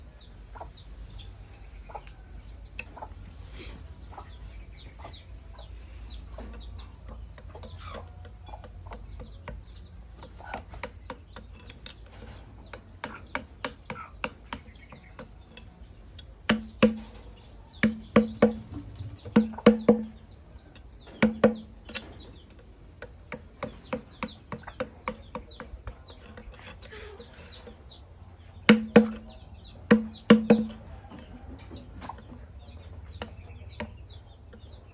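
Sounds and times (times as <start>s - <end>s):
high bird chirps: 0.0s - 34.9s
mallet striking chisel: 16.5s - 17.1s, 17.8s - 18.6s, 21.2s - 22.0s, 28.6s - 29.3s, 29.9s - 30.8s.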